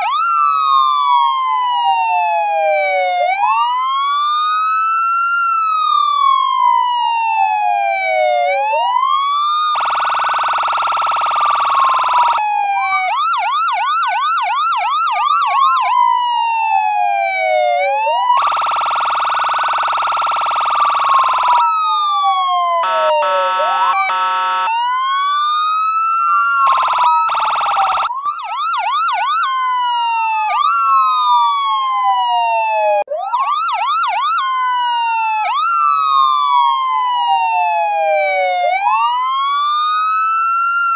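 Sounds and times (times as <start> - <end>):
electronic siren wail: 0.0 - 40.9
siren yelp: 0.0 - 40.9
electronic air-horn blasts: 22.8 - 24.8.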